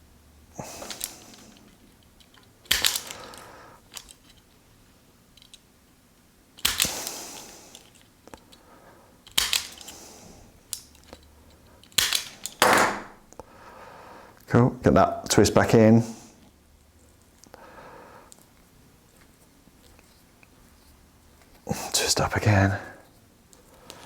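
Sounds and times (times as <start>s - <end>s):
hand tool snapping through cable: 0.7s - 4.4s, 6.6s - 8.5s, 9.2s - 10.0s, 10.7s - 13.1s.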